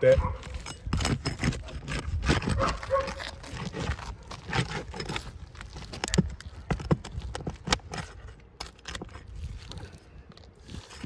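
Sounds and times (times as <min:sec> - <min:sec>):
roof shingles being pried up: 0:00.4 - 0:11.0.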